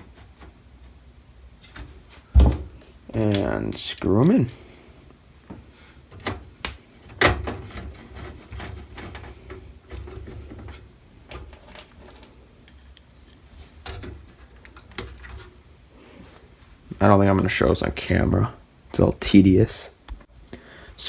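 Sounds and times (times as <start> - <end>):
small clicks and scraping of metal: 7.7 - 15.5.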